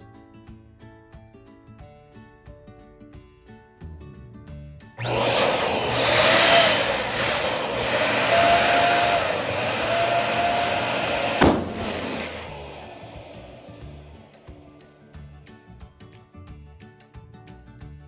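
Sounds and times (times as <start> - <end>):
electric balloon pump blowing air: 5.0 - 14.8.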